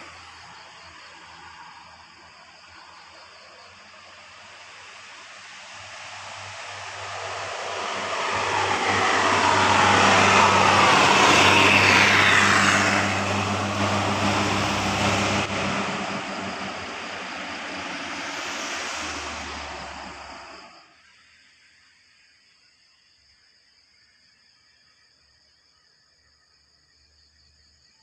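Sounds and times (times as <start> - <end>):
bus passing by: 0.0 - 20.9.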